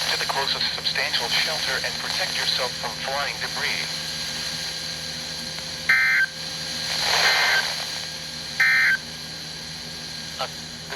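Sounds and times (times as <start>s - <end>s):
hiss: 6.5s - 8.1s.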